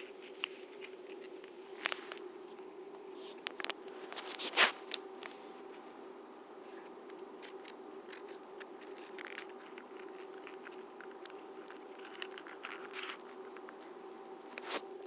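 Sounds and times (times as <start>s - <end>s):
low electrical hum: 0.0s - 15.0s
paper clicking and rustling: 7.4s - 13.8s.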